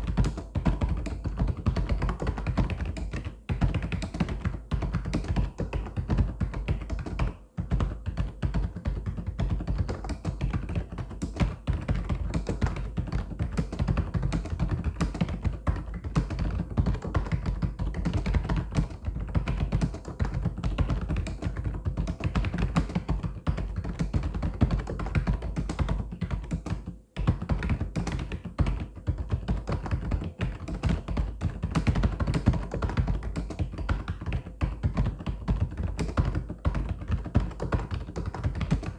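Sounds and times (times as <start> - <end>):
typing on mechanical keyboard: 0.0 - 38.9.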